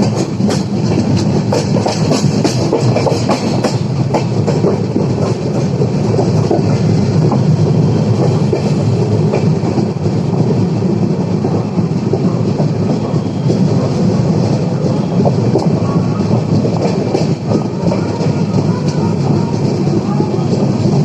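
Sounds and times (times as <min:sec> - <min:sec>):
train wheels rumbling on rail: 0:00.0 - 0:21.0.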